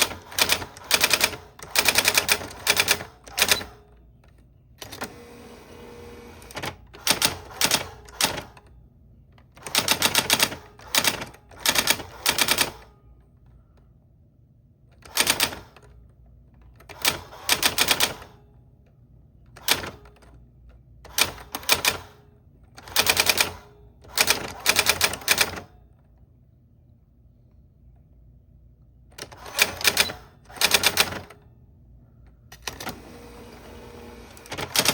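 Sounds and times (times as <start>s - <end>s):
typewriter keys clacking: 0.0s - 3.7s, 6.4s - 8.6s, 9.6s - 12.8s, 15.0s - 16.0s, 22.8s - 25.7s, 29.2s - 31.4s, 34.3s - 34.9s.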